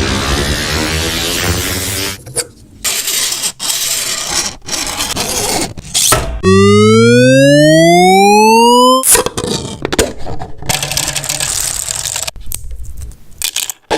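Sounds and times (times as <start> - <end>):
tone rising in pitch: 6.4 - 9.2.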